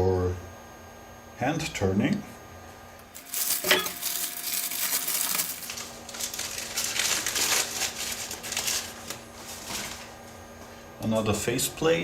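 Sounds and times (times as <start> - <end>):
newspaper rustling and crumpling: 3.1 - 10.4.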